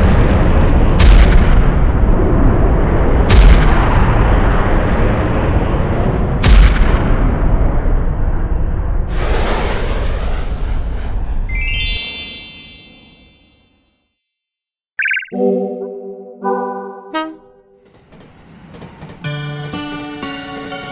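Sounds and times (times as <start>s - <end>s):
booming explosion impacts: 0.0s - 8.9s.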